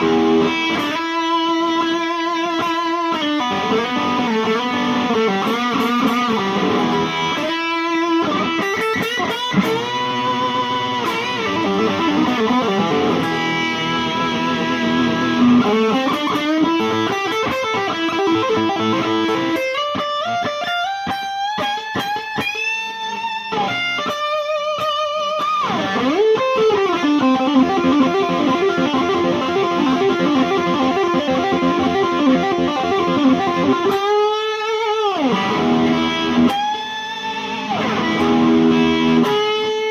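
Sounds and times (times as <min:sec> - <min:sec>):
electric guitar lead lines: 0:00.0 - 0:39.9.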